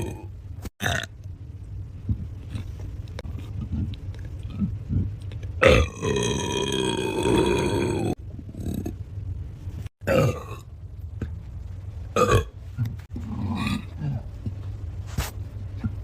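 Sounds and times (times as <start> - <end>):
loud human belch: 0.0 - 1.1, 5.6 - 8.2, 10.0 - 10.6, 12.2 - 12.5
low rumble: 0.0 - 16.0.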